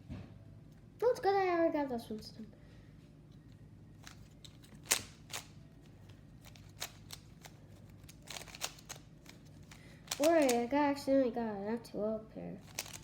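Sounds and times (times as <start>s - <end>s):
puzzle cube clicking: 4.0s - 5.6s, 6.4s - 10.6s, 12.6s - 13.0s.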